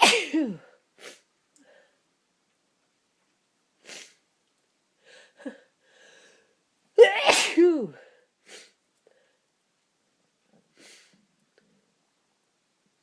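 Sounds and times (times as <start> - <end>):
person sneezing: 0.0 - 1.3, 7.0 - 8.8
person sniffing: 1.0 - 1.3, 3.8 - 4.2, 8.4 - 8.8, 10.7 - 11.2.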